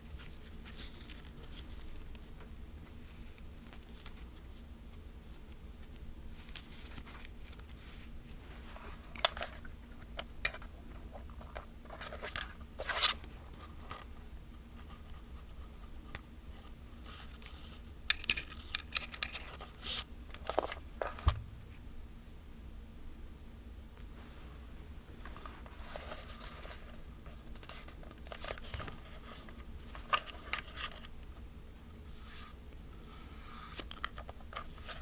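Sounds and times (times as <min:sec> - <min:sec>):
fingers handling plastic camera: 0:18.1 - 0:19.7.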